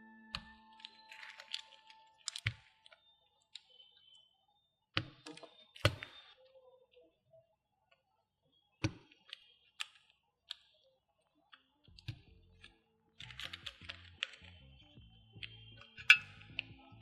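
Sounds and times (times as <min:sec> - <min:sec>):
background music: 0:00.0 - 0:03.1, 0:11.9 - 0:17.0
keyboard parts clicking into place: 0:00.3 - 0:03.8, 0:11.9 - 0:14.6.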